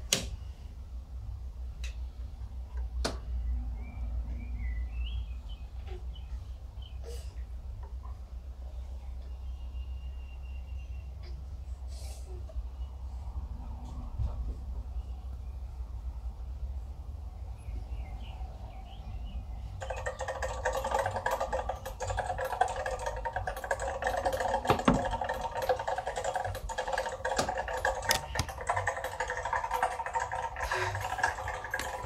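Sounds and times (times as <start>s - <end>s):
mechanical keyboard typing: 19.8s - 32.0s.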